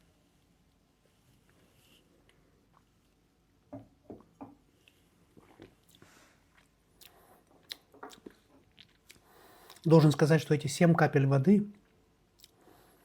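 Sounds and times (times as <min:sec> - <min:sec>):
soft sips and smacks: 0:04.2 - 0:09.9.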